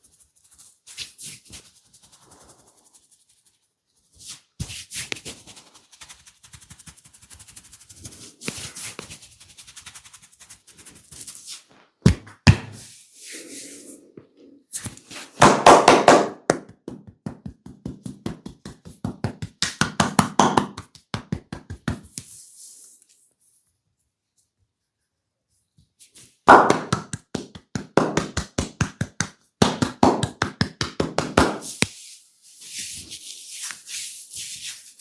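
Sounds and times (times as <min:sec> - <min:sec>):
fingers scratching through hair: 0:00.0 - 0:11.8, 0:31.5 - 0:35.0
rapid taps and pats on head: 0:04.6 - 0:12.8, 0:14.9 - 0:22.3, 0:26.4 - 0:32.0.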